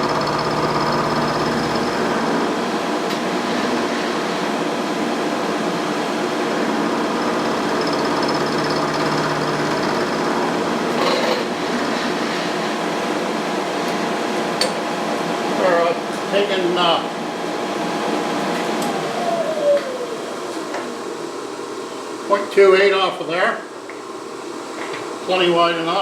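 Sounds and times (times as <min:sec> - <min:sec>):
milling machine cutting steel: 0:00.0 - 0:02.4, 0:07.0 - 0:11.0.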